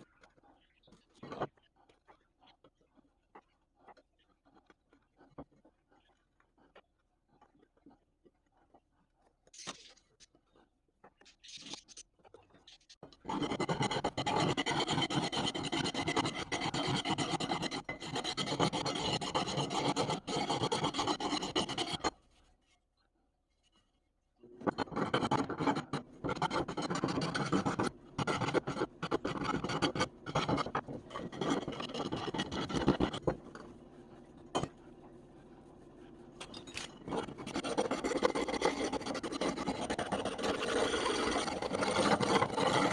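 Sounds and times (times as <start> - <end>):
abrasive scraping and rasping: 13.2 - 22.2, 24.6 - 34.8, 36.5 - 42.9.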